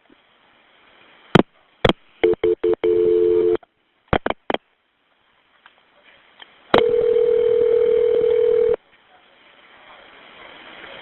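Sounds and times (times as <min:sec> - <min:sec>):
steady telephone tone: 0:02.2 - 0:03.6, 0:06.8 - 0:08.8.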